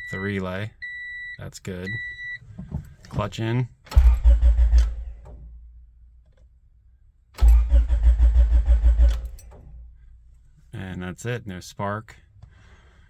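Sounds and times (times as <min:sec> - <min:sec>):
engine cranking on starter: 0:03.9 - 0:05.5, 0:07.4 - 0:10.2.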